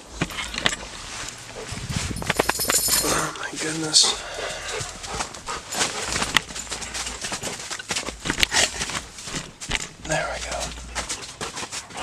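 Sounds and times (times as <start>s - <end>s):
dogs rustling and knocking: 0.0s - 12.0s.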